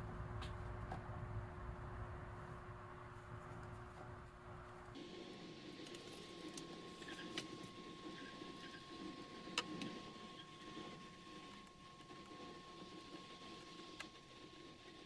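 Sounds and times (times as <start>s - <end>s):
faint steady whine: 0.0s - 15.0s.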